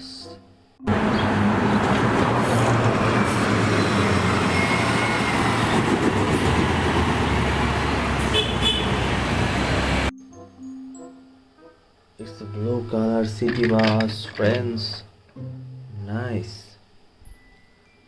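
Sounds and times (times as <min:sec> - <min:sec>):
road traffic noise: 0:00.8 - 0:10.1
bus engine running: 0:00.9 - 0:10.1.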